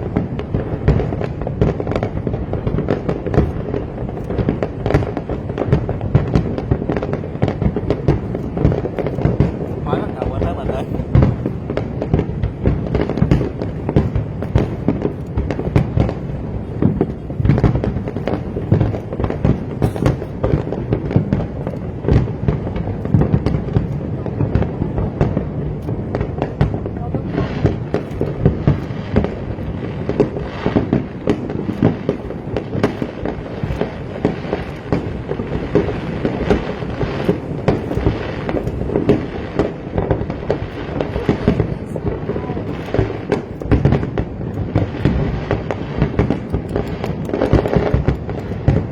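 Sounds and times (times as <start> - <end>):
fireworks bangs and crackles: 0.0 - 48.9.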